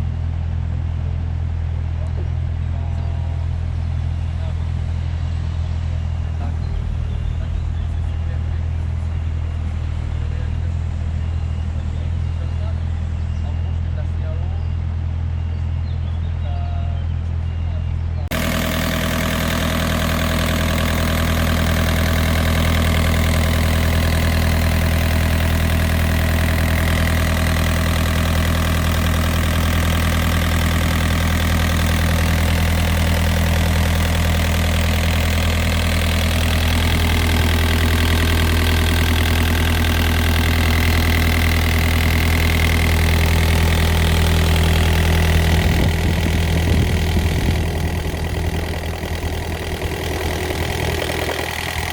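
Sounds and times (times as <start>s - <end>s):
diesel excavator engine running: 0.0s - 51.9s.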